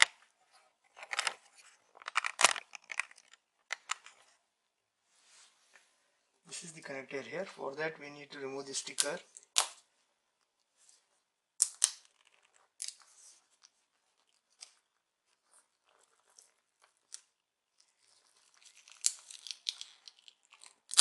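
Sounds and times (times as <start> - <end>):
crackling tearing sound: 17.9 - 21.0.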